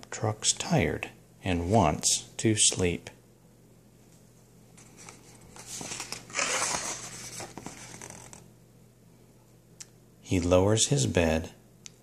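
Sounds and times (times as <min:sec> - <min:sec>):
book page turning: 0:04.8 - 0:08.4.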